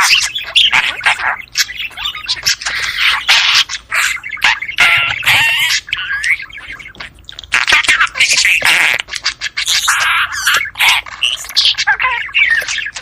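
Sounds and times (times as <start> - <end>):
budgerigars chattering: 0.0 - 13.0.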